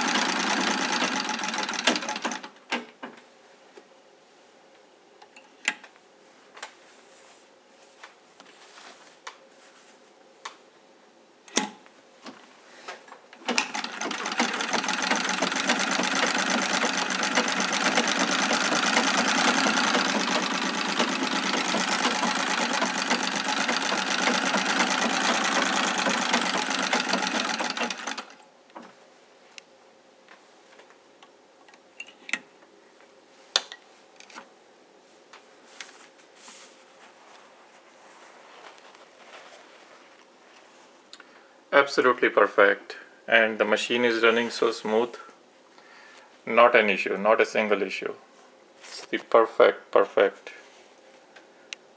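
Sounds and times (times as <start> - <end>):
treadle sewing machine stitching: 0.0 - 2.5, 13.4 - 28.4
sewing machine clicks: 0.0 - 2.9, 13.4 - 28.9.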